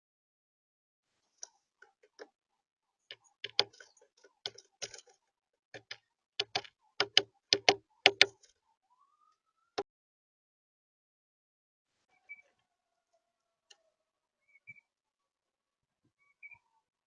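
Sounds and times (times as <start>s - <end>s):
birds pecking and tapping: 1.3s - 2.4s, 3.1s - 8.6s.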